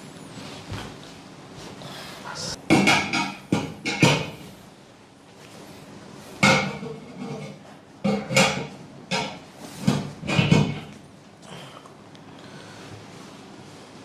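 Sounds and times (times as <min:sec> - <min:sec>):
sharp knocks and thumps: 0:06.4 - 0:10.9.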